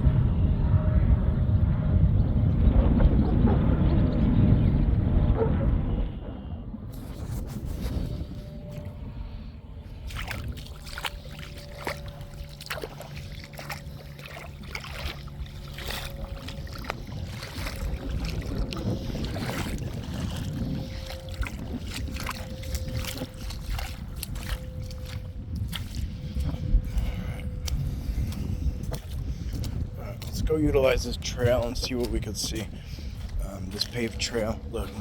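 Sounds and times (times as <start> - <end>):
faint distant engine hum: 0.0 - 35.0
wind on microphone: 0.0 - 35.0
footsteps crunching on rough ground: 9.8 - 35.0.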